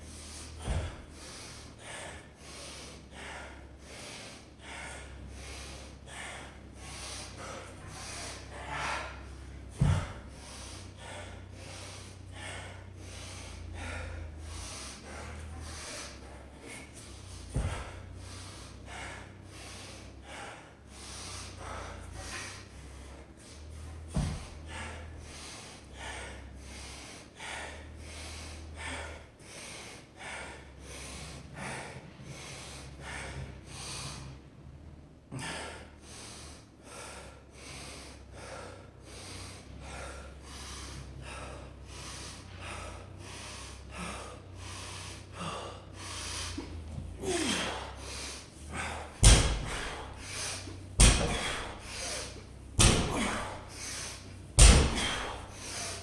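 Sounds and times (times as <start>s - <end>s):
heavy breathing through the nose: 0.0s - 56.0s
barbell thudding on floor: 0.7s - 1.0s, 9.8s - 10.2s, 24.1s - 24.6s, 49.2s - 56.0s.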